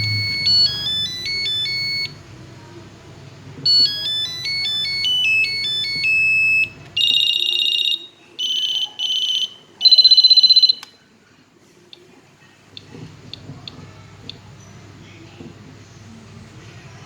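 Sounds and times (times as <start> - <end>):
phone ringtone beeps: 0.0 - 2.2, 3.7 - 10.9
click: 10.8 - 11.0.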